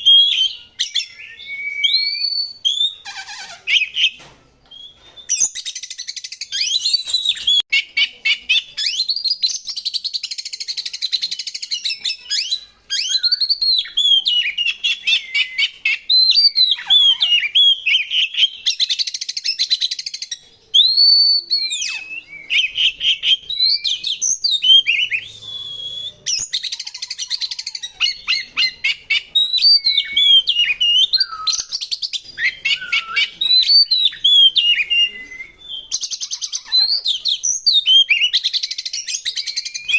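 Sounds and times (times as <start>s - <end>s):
bird singing whistled notes: 0.0s - 39.9s.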